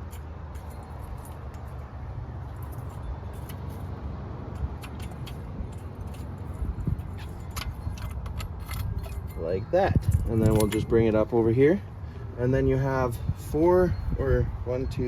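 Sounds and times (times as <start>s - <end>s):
metallic tool clicks: 4.5s - 9.4s.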